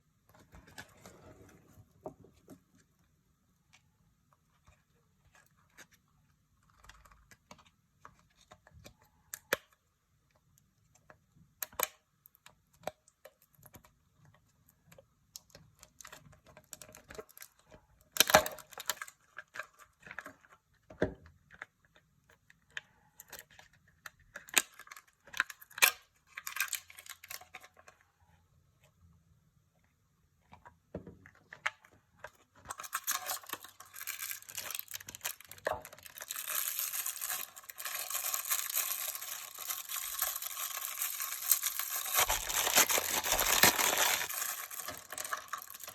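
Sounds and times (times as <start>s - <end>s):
foil wrappers crinkling and tearing: 32.7s - 45.9s
plastic pieces clicking: 32.7s - 45.9s.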